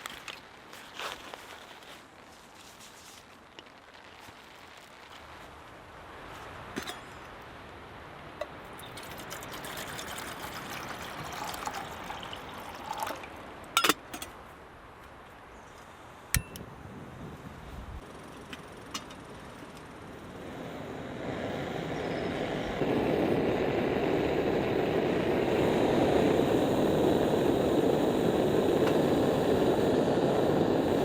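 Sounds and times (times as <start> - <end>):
rain pattering on a tarp: 0.0 - 6.6.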